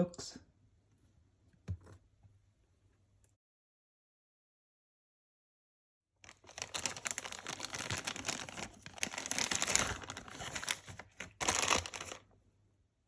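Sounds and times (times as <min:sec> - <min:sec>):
packaging crinkling and rustling: 0:06.2 - 0:12.2.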